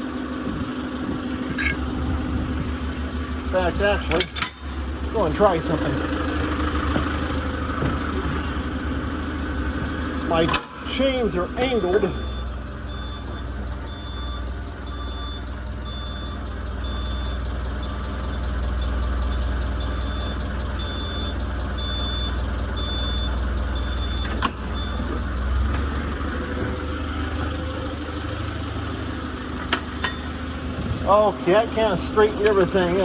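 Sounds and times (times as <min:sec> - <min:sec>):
forklift engine running: 0:00.0 - 0:33.0
reversing alarm beeping: 0:10.9 - 0:25.7.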